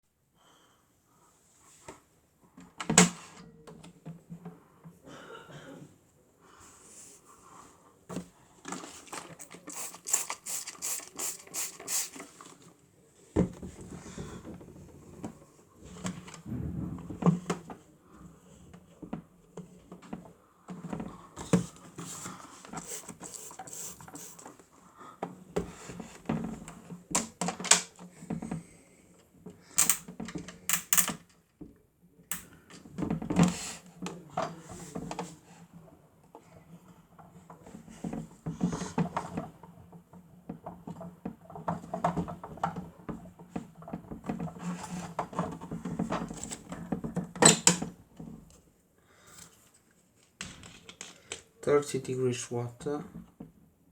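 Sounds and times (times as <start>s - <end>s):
plastic toy clicking and scraping: 8.7s - 12.5s, 22.1s - 24.6s, 29.8s - 30.1s, 30.7s - 31.2s.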